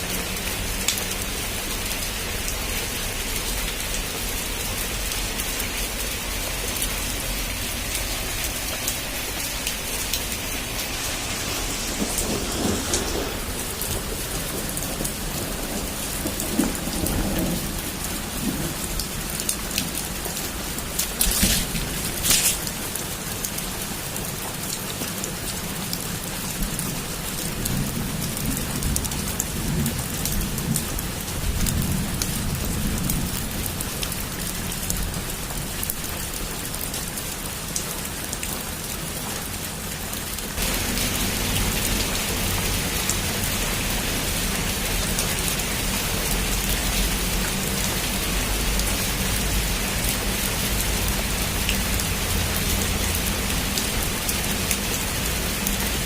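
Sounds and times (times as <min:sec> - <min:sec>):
heavy rain on a rooftop: 0:00.0 - 0:56.0
low rumble: 0:06.7 - 0:17.7.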